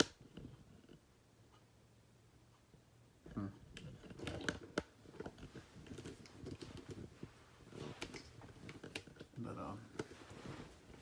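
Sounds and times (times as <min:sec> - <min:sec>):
handling clicks and rustles: 0:03.7 - 0:11.0.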